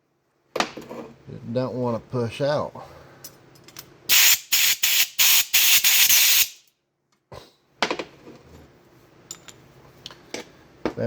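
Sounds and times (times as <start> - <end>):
hissing spray blasts: 4.1 - 6.6.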